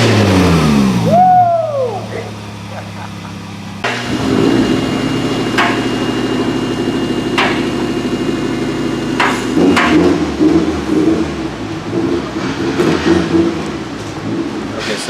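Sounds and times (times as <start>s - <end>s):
car engine running: 0.0s - 15.0s
sharp knocks: 5.5s - 6.0s, 7.3s - 7.8s, 9.2s - 10.2s.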